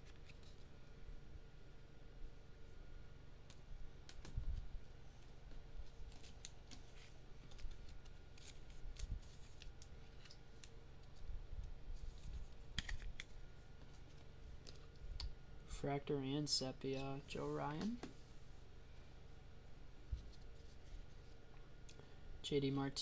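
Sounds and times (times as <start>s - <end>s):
foil card packs crinkling: 5.8s - 11.2s.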